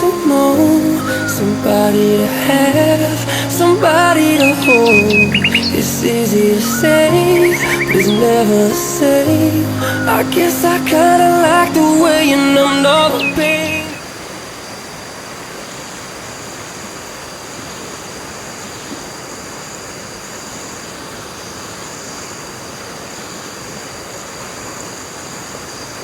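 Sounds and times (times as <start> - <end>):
rushing water: 0.0 - 26.0.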